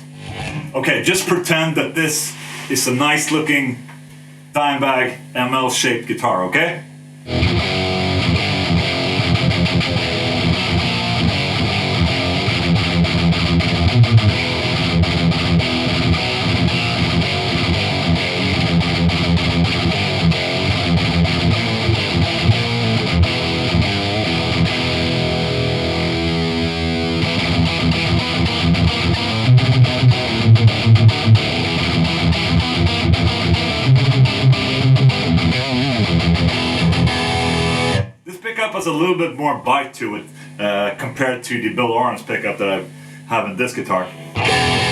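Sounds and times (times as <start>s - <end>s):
distorted electric guitar riffing: 7.2s - 38.2s, 44.0s - 44.9s.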